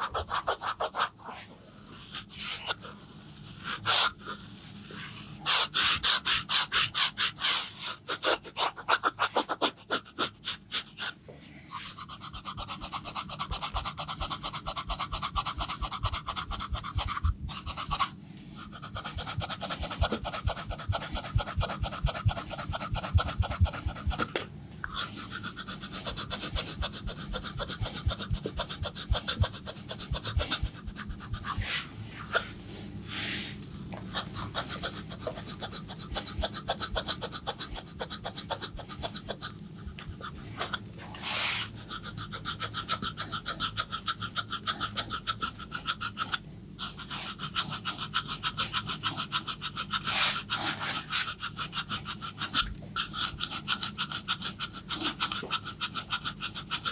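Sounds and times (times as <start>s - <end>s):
hands rubbing skin: 11.8s - 24.4s, 25.0s - 56.9s.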